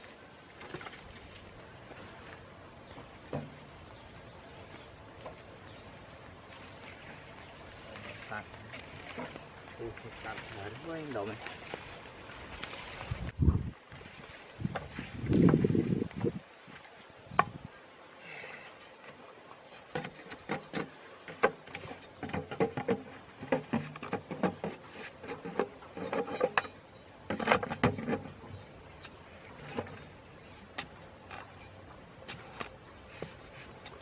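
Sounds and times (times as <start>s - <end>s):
wooden sticks knocking and rubbing: 19.8s - 28.4s.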